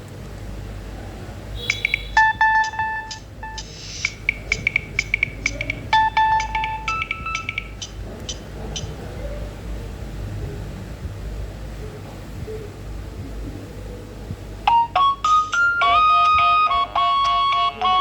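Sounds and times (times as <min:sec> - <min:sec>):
steady low hum: 0:00.0 - 0:18.0
phone ringtone beeping melody: 0:01.6 - 0:08.4, 0:14.7 - 0:18.0.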